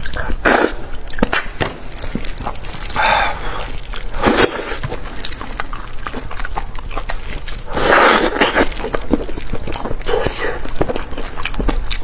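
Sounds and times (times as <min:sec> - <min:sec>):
small eating clicks: 0:00.0 - 0:12.0
wet smacking and sucking: 0:00.0 - 0:12.0
loud slurp: 0:07.7 - 0:08.8.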